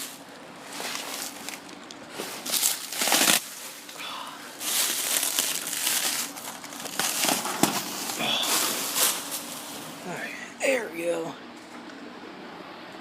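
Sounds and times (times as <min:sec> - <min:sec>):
crinkling and rustling: 0:00.0 - 0:04.0, 0:04.6 - 0:10.0.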